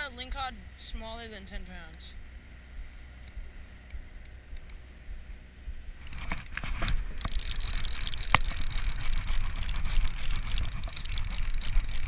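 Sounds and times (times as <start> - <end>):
fishing reel cranking and clicking: 6.0 - 12.0.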